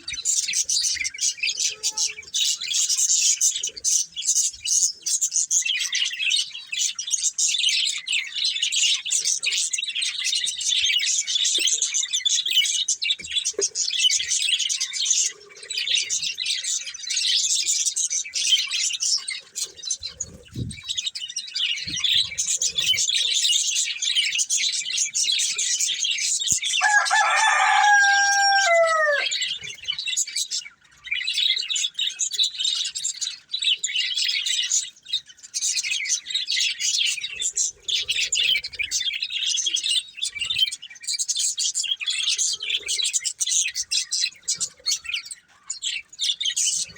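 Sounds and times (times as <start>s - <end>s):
budgerigars chirping and chattering: 0.0s - 46.9s
low drawn-out bird call: 26.8s - 29.4s.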